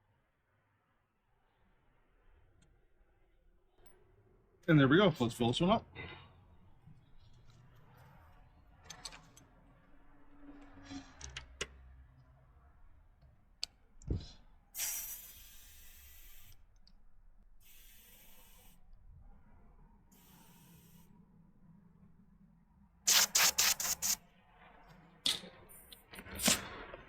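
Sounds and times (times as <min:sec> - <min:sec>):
air compressor hissing: 0:14.8 - 0:16.7, 0:17.6 - 0:18.9, 0:20.1 - 0:21.1, 0:23.1 - 0:24.2.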